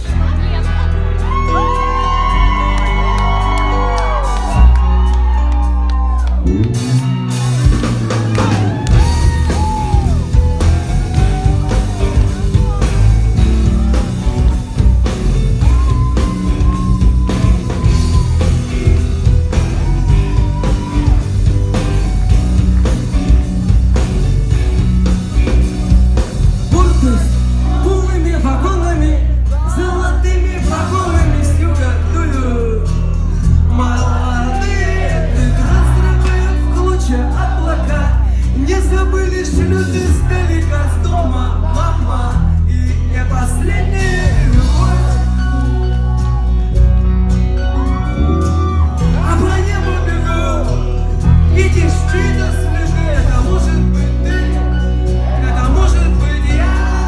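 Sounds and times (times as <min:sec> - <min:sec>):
loud pop song with bass beat: 0:00.0 - 0:57.0
people singing: 0:33.7 - 0:38.3, 0:39.6 - 0:46.4, 0:51.8 - 0:57.0.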